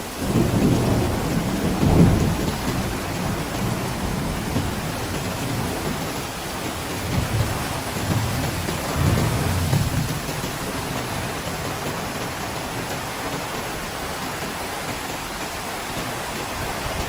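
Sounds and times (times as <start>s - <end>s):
heavy rain falling: 0.0s - 17.0s
low rumbles: 7.0s - 11.5s.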